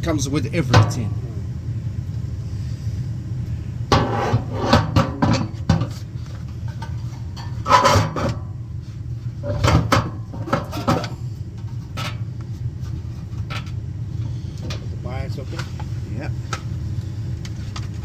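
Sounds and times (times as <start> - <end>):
steady low hum: 0.0 - 18.0
tools knocking and rattling: 0.7 - 1.2, 3.9 - 8.5, 9.4 - 12.3.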